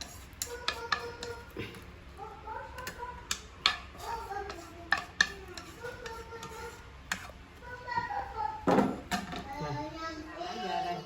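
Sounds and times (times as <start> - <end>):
utensil knocking against a pan: 2.8 - 7.3.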